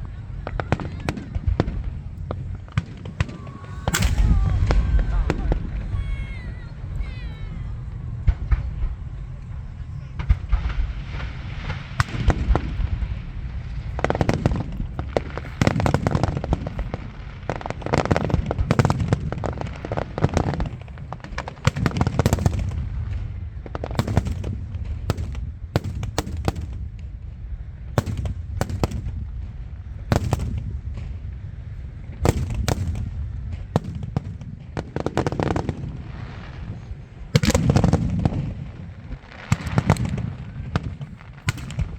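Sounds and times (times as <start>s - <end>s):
deep rumbling booms: 0.0s - 27.4s
fireworks bangs and crackles: 0.0s - 41.9s.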